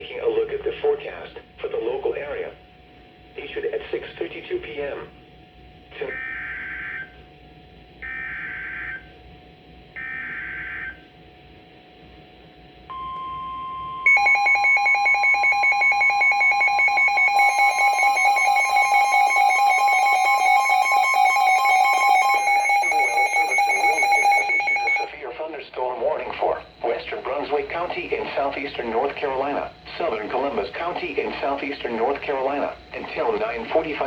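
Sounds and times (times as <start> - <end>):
steady warning alarm tone: 1.6 - 25.3, 26.1 - 34.0
rapidly pulsing electronic alarm: 3.4 - 25.4, 26.1 - 34.0
warbling data bursts: 15.8 - 25.1.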